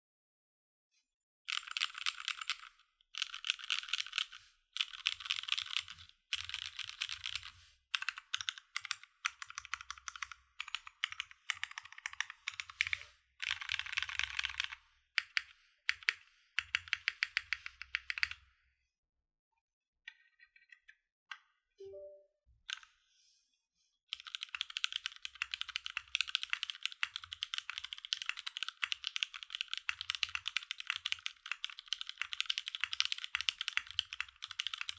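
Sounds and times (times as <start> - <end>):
typing on mechanical keyboard: 1.5 - 18.4, 24.1 - 34.9.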